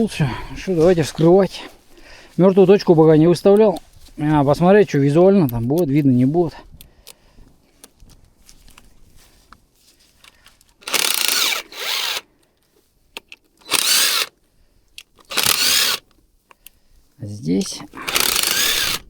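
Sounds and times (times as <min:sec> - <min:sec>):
power drill whirring: 0:10.8 - 0:12.3, 0:13.6 - 0:14.3, 0:15.3 - 0:16.0, 0:18.1 - 0:19.0
parts clicking: 0:17.6 - 0:19.0.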